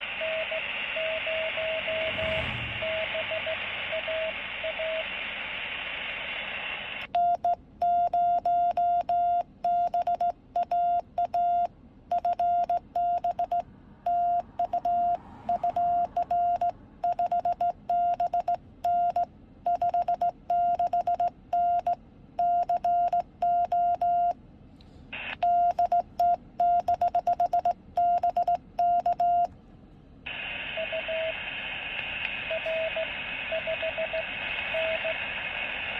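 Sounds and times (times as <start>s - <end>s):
receiver hiss: 0.0s - 7.1s, 25.2s - 25.4s, 30.3s - 35.9s
morse code tones: 0.2s - 5.1s, 7.1s - 24.4s, 25.2s - 29.5s, 30.3s - 31.5s, 32.4s - 35.4s.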